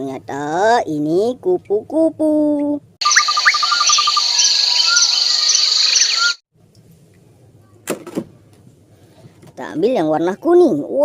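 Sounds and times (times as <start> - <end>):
birds chirping: 3.0 - 6.4
high insect trill: 3.0 - 6.4.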